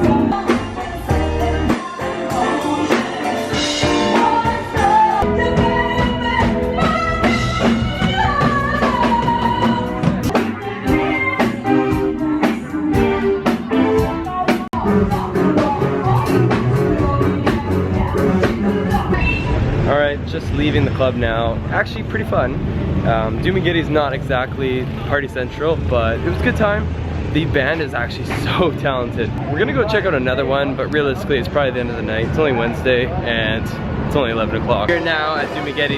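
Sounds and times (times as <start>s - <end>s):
drum kit: 0.0s - 21.1s, 34.9s - 35.9s
guitar: 0.0s - 35.9s.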